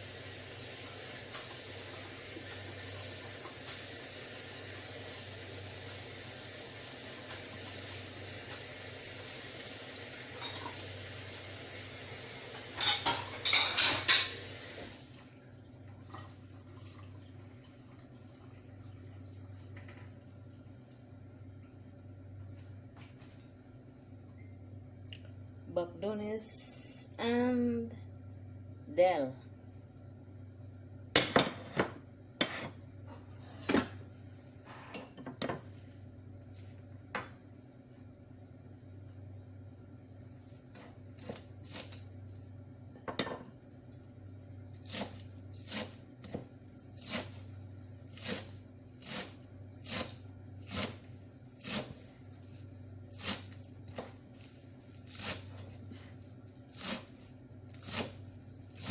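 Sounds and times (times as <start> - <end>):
cooking hiss: 0.0 - 15.1
dishes and utensils clinking: 10.4 - 10.8, 12.8 - 14.4.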